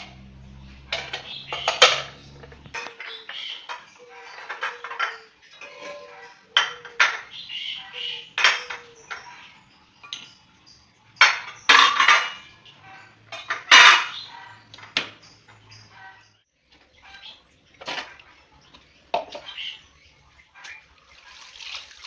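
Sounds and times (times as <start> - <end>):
dishes and cutlery clattering: 0.0 - 7.4, 8.0 - 16.0.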